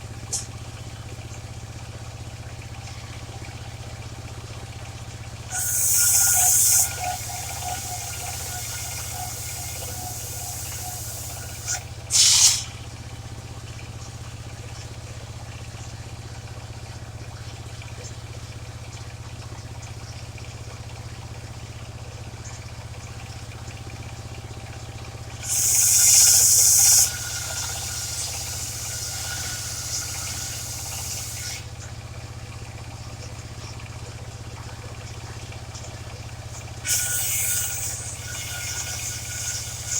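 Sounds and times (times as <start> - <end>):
sawmill engine humming: 0.0 - 13.4, 22.8 - 34.2, 34.8 - 39.9
saw blade cutting wood: 5.5 - 12.7, 25.4 - 31.7, 36.8 - 39.9.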